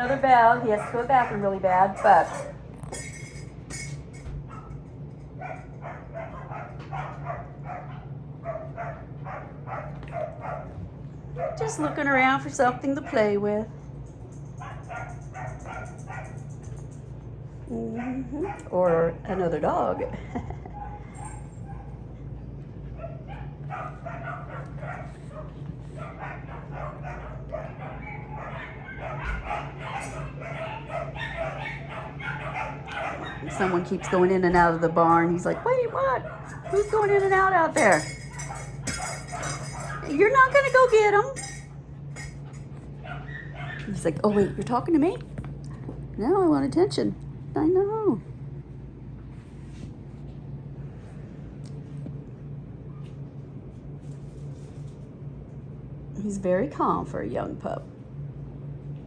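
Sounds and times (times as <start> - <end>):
dogs barking: 0.0 - 13.8, 14.4 - 16.8, 18.0 - 19.1, 20.0 - 45.2
low electrical hum: 0.0 - 59.0.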